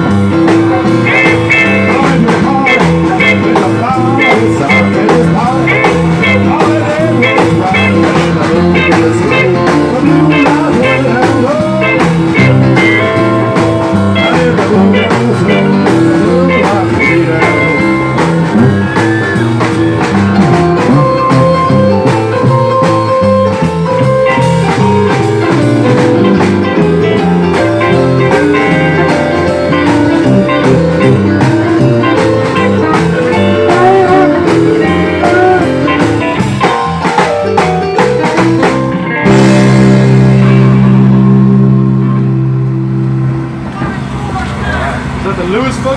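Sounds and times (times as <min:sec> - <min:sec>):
live blues band playing: 0:00.0 - 0:45.9
person singing: 0:00.4 - 0:22.1, 0:27.1 - 0:36.4.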